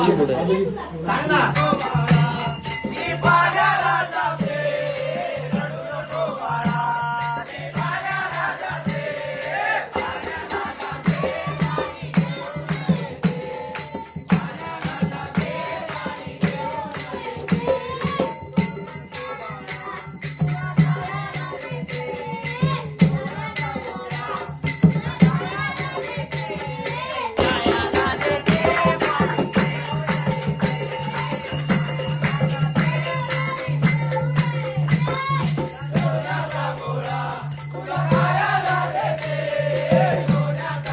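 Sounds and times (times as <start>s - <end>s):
devotional singing: 0.0s - 40.9s
hand cymbals jingling: 1.5s - 40.9s
hand drum beating: 27.2s - 40.9s.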